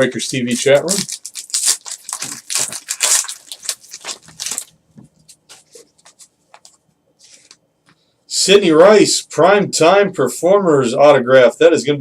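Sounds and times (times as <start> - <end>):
wrapper crinkling and tearing: 0.0 - 4.8.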